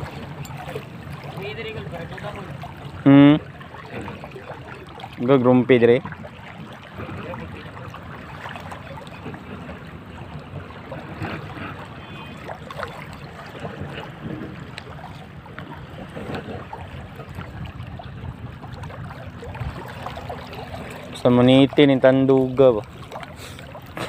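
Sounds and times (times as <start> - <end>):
water at the shore: 0.0 - 24.0
wind rumble on microphone: 13.4 - 21.9.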